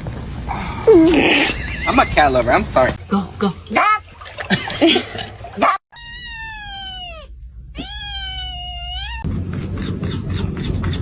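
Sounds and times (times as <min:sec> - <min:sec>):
cat meowing: 0:05.9 - 0:09.3.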